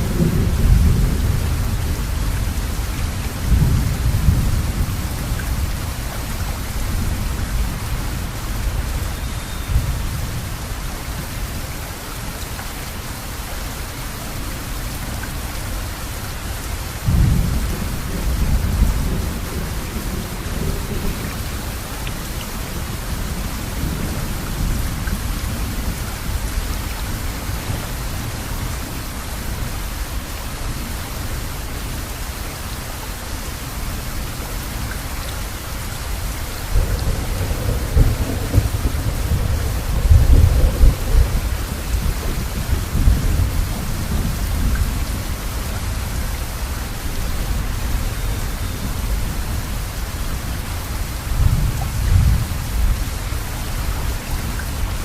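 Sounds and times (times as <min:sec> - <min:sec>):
thunder rumbling: 0:00.0 - 0:09.1, 0:17.0 - 0:26.7, 0:36.6 - 0:54.9
steady rain: 0:00.0 - 0:55.0.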